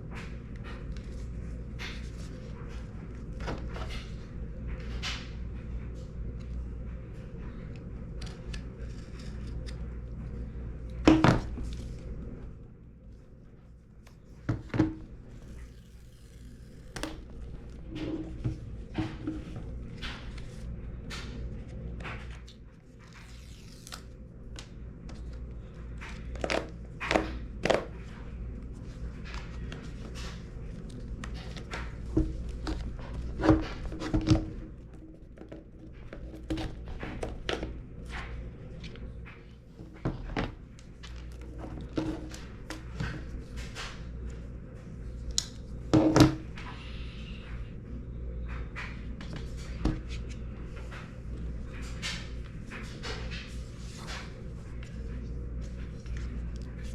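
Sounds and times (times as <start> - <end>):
steady low hum: 0.0 - 56.9.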